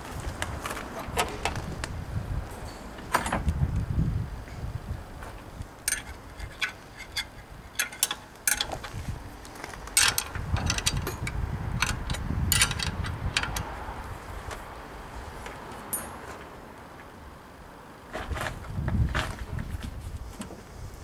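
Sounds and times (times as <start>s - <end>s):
tools clinking against metal: 5.9s - 8.9s, 10.0s - 13.7s, 15.9s - 16.2s.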